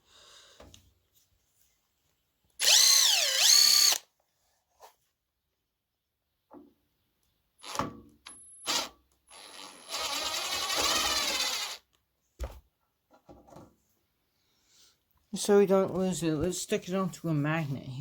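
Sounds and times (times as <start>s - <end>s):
drill motor whining: 2.6s - 4.0s, 8.6s - 11.8s.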